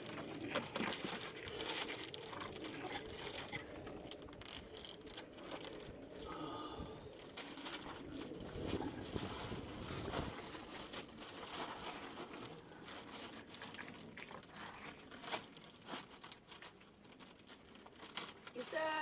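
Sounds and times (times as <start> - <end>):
crunching and rustling: 0.0 - 19.0.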